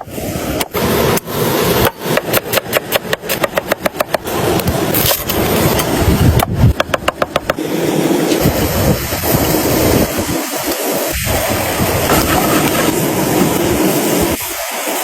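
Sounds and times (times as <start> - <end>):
knife chopping on wooden board: 2.1 - 4.2
background hiss: 7.3 - 15.0.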